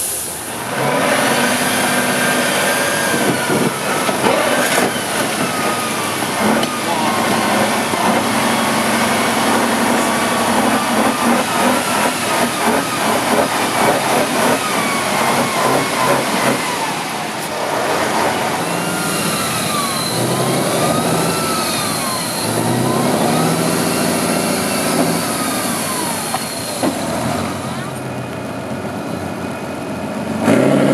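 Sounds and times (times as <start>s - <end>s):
truck diesel engine revving: 0.0s - 30.9s.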